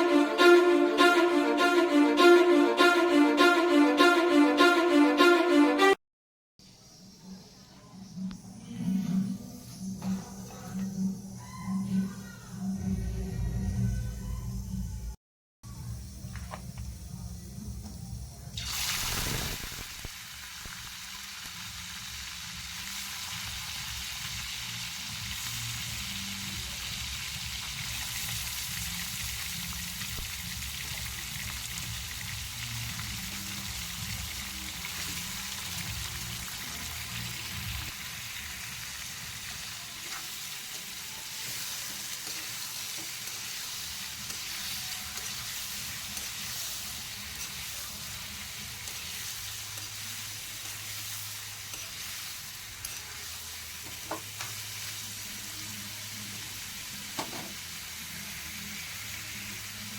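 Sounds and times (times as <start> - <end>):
food sizzling in hot oil: 18.6 - 59.9.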